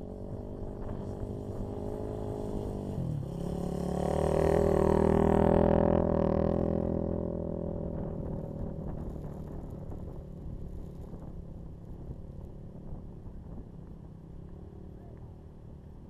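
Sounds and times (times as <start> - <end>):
dirt bike engine: 0.0 - 14.9.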